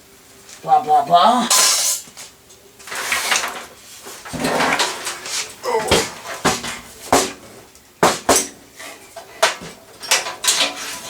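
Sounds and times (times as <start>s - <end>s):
light clatter of parts: 1.5s - 11.0s
knocks on metal computer case: 5.9s - 8.6s.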